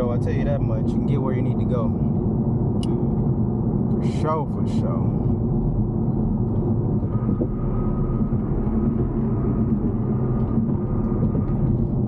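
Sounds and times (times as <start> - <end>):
engine and tyre rumble: 0.0 - 12.0.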